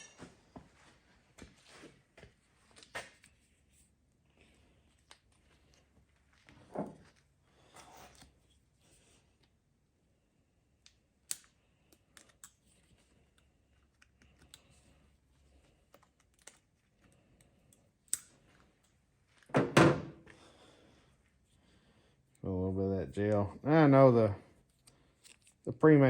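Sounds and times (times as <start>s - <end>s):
small clicks and taps of handling: 15.6s - 19.5s.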